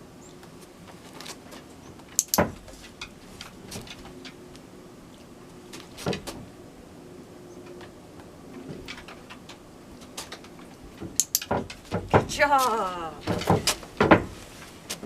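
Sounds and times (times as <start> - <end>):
wooden board knocking: 11.0 - 12.4, 13.2 - 14.4.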